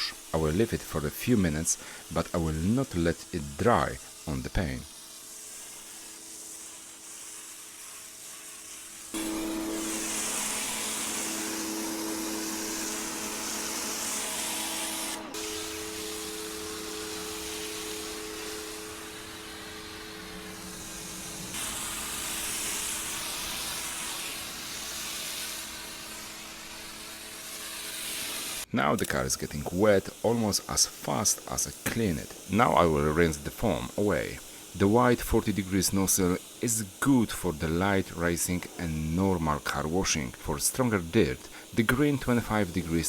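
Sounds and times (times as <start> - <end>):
pressure washer motor humming: 0.0 - 43.0
water spray hissing: 0.0 - 43.0.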